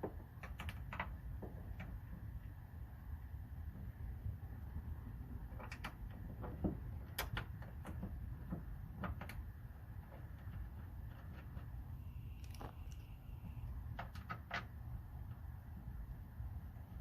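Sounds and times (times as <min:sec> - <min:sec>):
clicks and knocks of lock parts: 0:00.0 - 0:02.2, 0:05.4 - 0:11.8.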